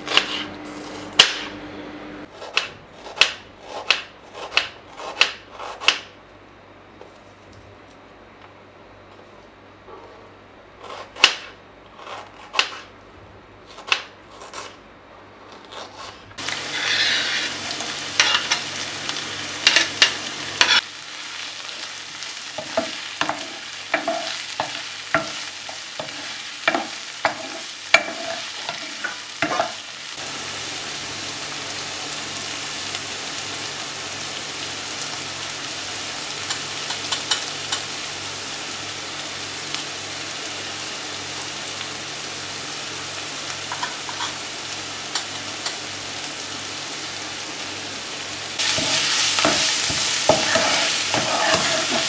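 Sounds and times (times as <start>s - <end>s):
food sizzling in pan: 16.4s - 52.0s.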